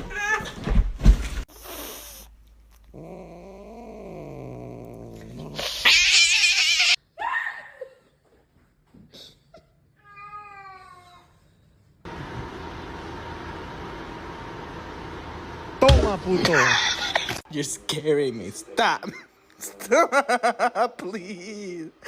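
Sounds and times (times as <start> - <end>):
cat yowling: 5.6 - 7.0.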